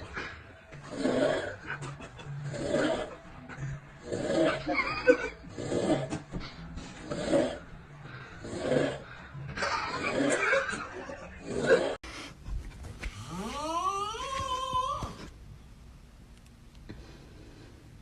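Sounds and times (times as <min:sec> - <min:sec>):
snoring: 0:04.0 - 0:06.2, 0:06.9 - 0:10.7.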